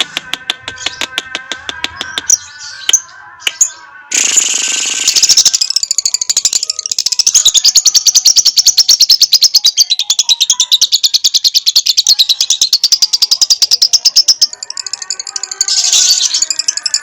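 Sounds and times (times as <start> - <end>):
bird chattering trill: 1.7 - 17.0.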